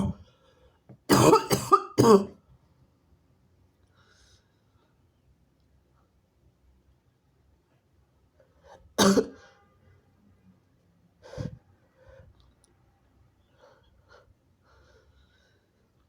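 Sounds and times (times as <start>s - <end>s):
faint breaths: 3.8s - 5.3s, 13.4s - 16.0s.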